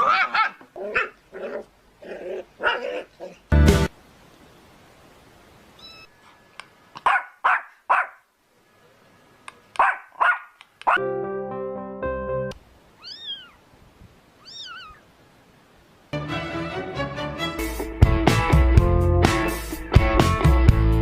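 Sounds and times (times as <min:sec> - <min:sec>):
dog barking: 0:00.0 - 0:01.2, 0:02.6 - 0:03.4, 0:07.0 - 0:08.3, 0:09.8 - 0:11.0.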